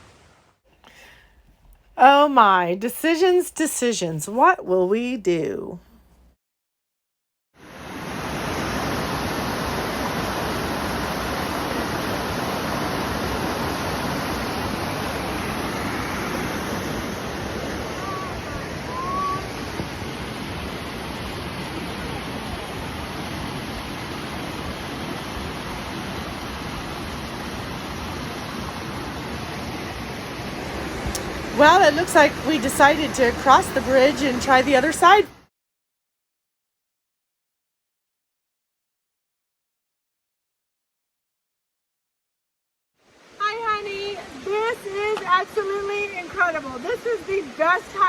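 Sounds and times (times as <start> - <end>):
creek rushing over waterfalls: 7.6 - 35.3, 43.0 - 48.0.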